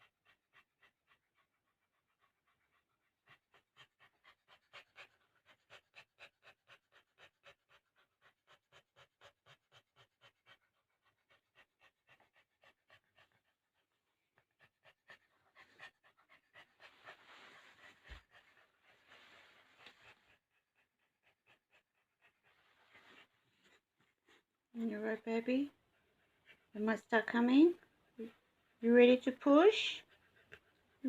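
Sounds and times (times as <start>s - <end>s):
dog panting: 0.0s - 31.0s.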